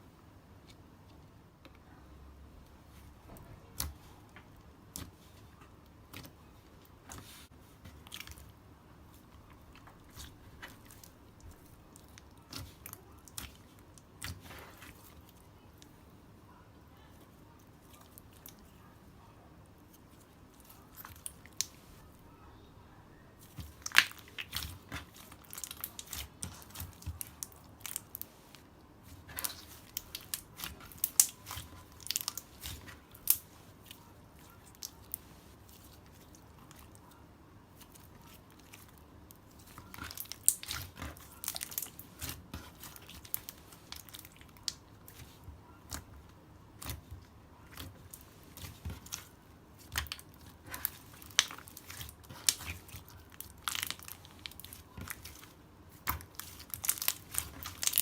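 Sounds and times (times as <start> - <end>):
ice slime crackling: 23.4 - 37.2, 37.8 - 46.2, 46.8 - 58.0.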